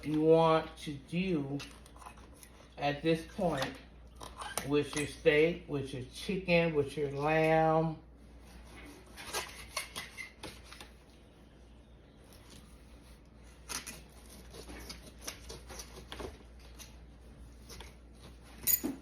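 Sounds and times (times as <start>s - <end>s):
knife slicing raw meat: 13.6s - 17.0s.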